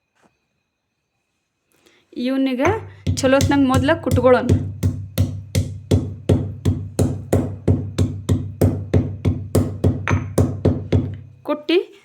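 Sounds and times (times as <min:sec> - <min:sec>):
pestle pounding in a mortar: 0:02.6 - 0:11.4.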